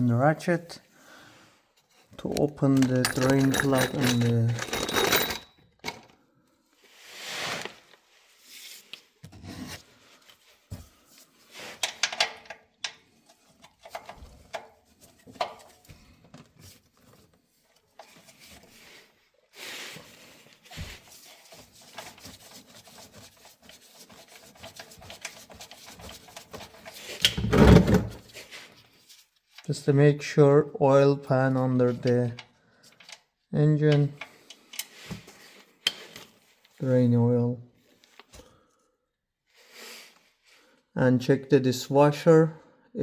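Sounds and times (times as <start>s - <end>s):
ratchet scraping and clicking: 2.7s - 5.5s.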